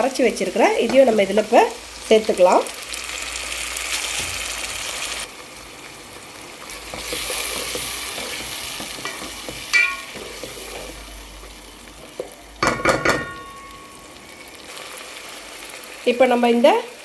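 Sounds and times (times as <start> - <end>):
food sizzling in oil: 0.0 - 17.0
spoon clinking on metal pan: 9.0 - 10.2, 12.6 - 14.1.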